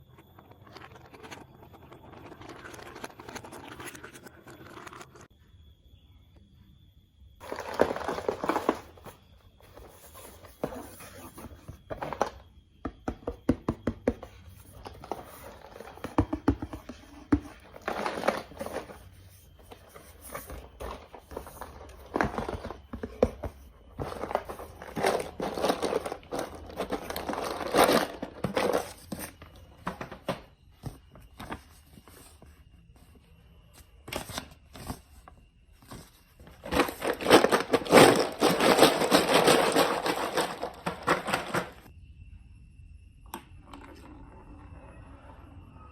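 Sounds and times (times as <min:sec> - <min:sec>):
plastic blocks clicking and rattling: 0:14.8 - 0:30.4, 0:36.5 - 0:41.9
packaging crinkling: 0:36.6 - 0:41.9.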